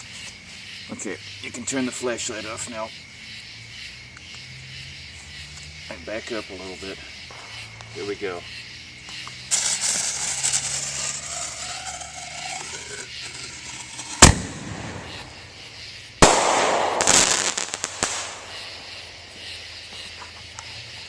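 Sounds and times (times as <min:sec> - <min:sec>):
firework crackling: 0:06.5 - 0:21.0
firework bangs: 0:07.2 - 0:08.4, 0:09.0 - 0:20.2.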